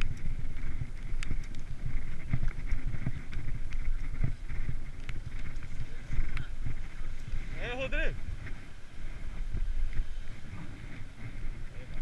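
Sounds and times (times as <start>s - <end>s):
bicycle clicks and knocks: 0.0s - 6.5s
road noise: 0.0s - 12.0s
wind buffeting microphone: 0.0s - 12.0s.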